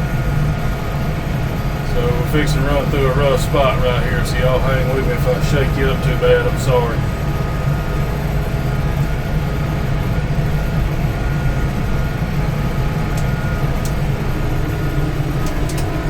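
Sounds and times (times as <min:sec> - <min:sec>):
tractor engine droning: 0:00.0 - 0:16.0
light clicks: 0:15.4 - 0:16.0.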